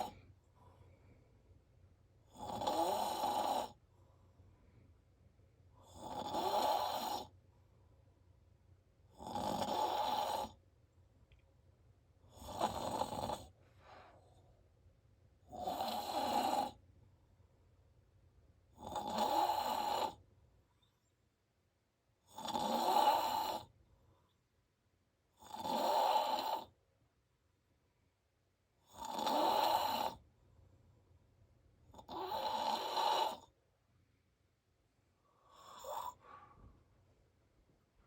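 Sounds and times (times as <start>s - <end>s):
man snoring loudly: 2.3s - 3.8s, 5.9s - 7.3s, 9.2s - 10.6s, 12.3s - 13.5s, 15.5s - 16.8s, 18.8s - 20.2s, 22.3s - 23.7s, 25.4s - 26.7s, 28.9s - 30.2s, 32.0s - 33.4s, 35.6s - 36.2s.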